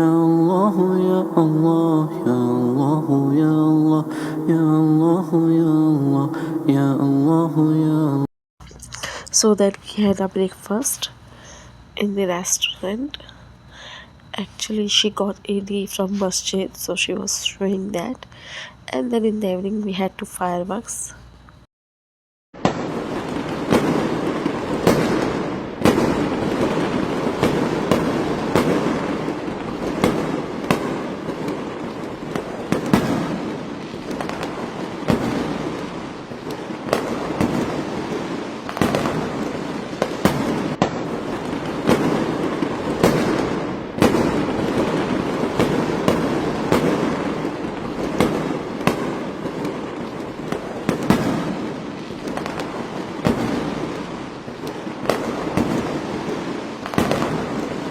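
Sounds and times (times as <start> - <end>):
fireworks sharp bangs: 0.0 - 7.9, 22.6 - 57.9
din of fireworks bursts: 0.0 - 8.0, 22.6 - 57.9.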